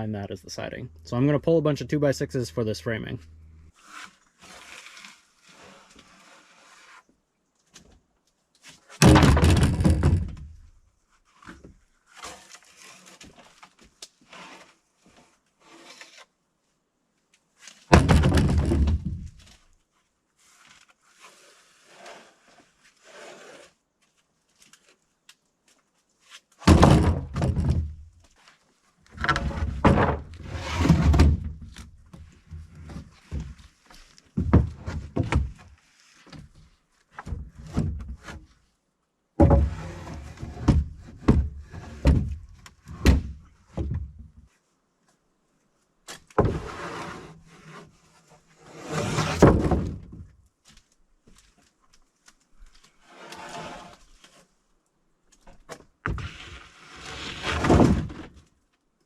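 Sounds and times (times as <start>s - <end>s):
lumber scraping and knocking: 8.9s - 10.6s, 17.9s - 19.6s, 26.6s - 28.4s, 29.1s - 38.6s, 39.4s - 44.5s, 46.1s - 51.6s, 55.4s - 58.5s
wooden boards dropping with thunks: 9.0s - 10.6s, 17.9s - 19.5s, 26.6s - 28.1s, 29.2s - 35.7s, 37.2s - 38.4s, 39.4s - 44.2s, 49.0s - 50.3s, 57.3s - 58.4s.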